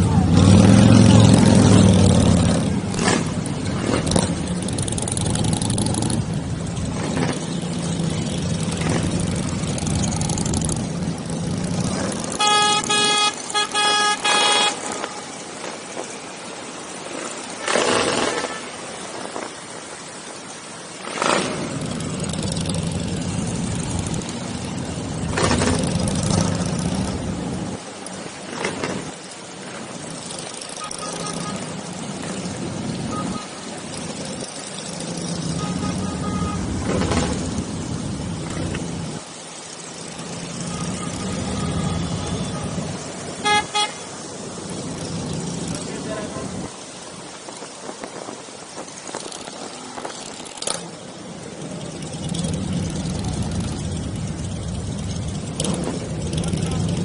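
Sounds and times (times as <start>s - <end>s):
motorcycle engines running: 0.0s - 57.0s
motorcycle horns tooting: 12.3s - 15.4s, 30.7s - 31.8s, 35.4s - 37.4s, 40.5s - 44.2s.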